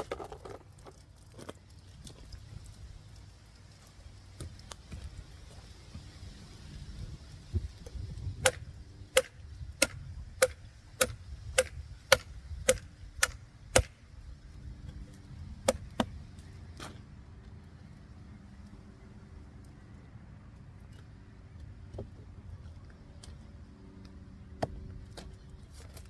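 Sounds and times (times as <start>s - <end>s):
axe chopping wood: 8.4s - 14.0s.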